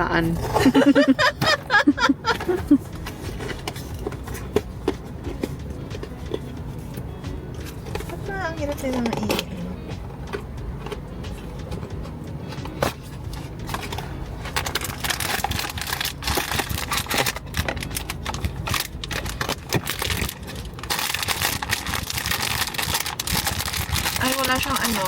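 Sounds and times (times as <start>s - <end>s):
plastic wrapping crinkling: 12.6s - 25.0s.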